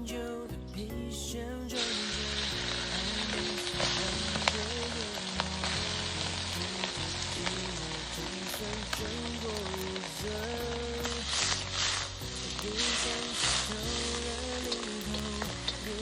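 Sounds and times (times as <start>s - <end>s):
food sizzling in hot oil: 1.5s - 16.0s.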